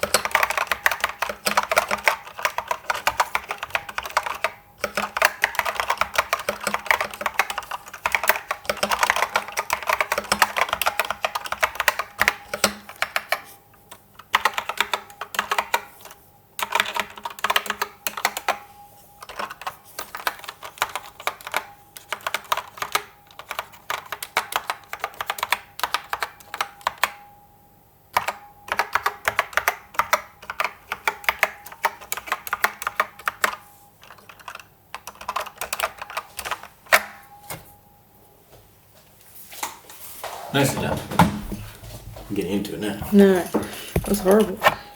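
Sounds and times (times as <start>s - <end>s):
fast clicky keyboard typing: 0.0s - 13.5s, 14.2s - 18.6s, 19.2s - 27.2s, 28.2s - 37.0s.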